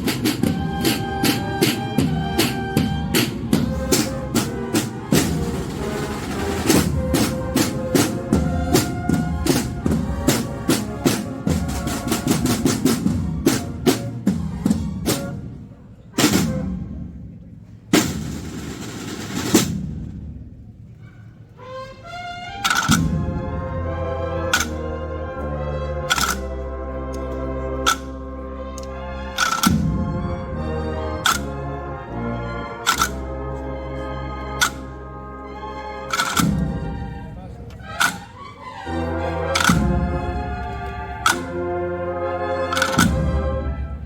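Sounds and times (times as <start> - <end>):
snare drum rolls: 0.0 - 15.6, 17.9 - 20.5, 39.5 - 41.6, 42.7 - 44.0.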